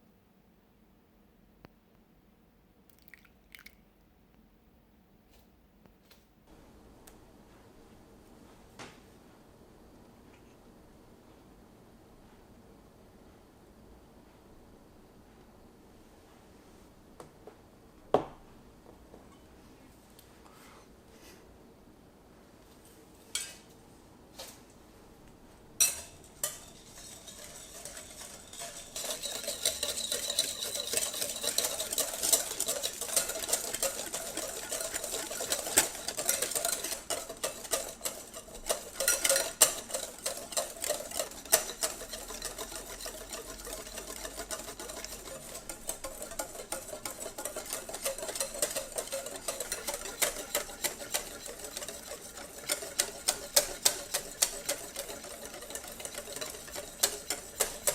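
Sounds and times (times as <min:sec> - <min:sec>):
utensil clinking against bowl: 0:25.8 - 0:57.9.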